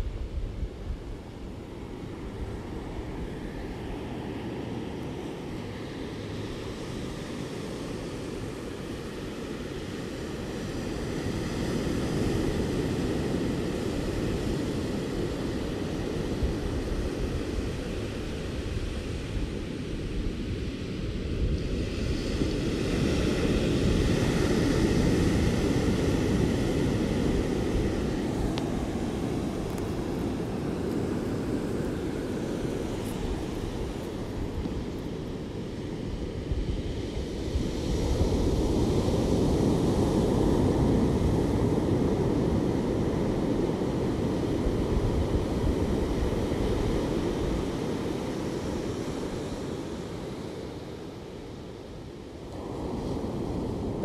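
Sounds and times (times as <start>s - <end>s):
ocean waves washing on shore: 0.0s - 54.0s.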